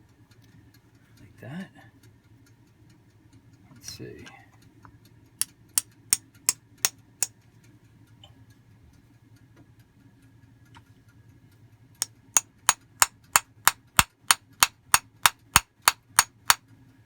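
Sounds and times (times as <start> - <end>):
padded tool tapping metal piston: 12.0 - 16.6.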